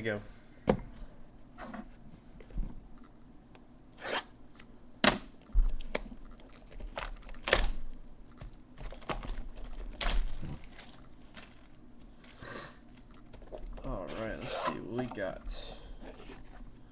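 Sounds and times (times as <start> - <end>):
plastic wrap and cardboard tearing: 5.7 - 14.2.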